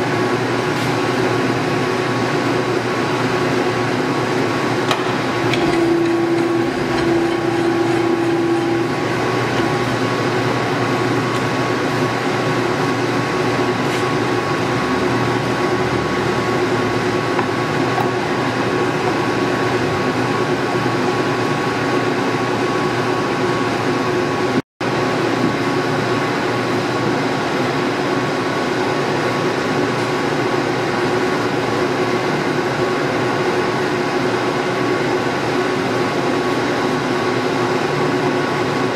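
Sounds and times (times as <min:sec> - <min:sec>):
lathe running: 0:03.5 - 0:23.8
extra tone: 0:05.3 - 0:11.3.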